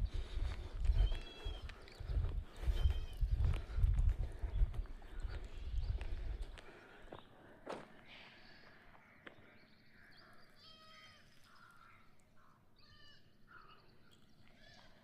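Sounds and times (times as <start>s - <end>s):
faint animal calls: 1.0s - 1.9s, 8.2s - 15.0s.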